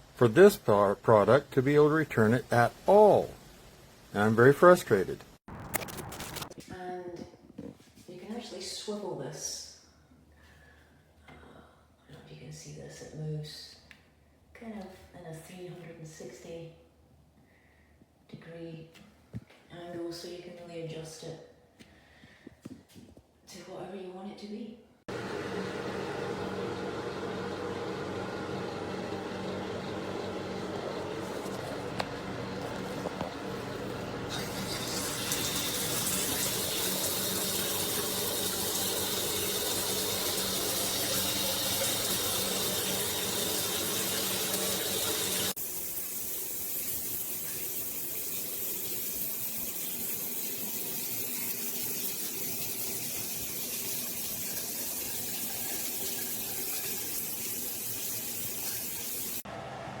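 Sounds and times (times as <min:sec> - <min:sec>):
water running: 0:00.1 - 0:05.4, 0:25.1 - 0:59.5.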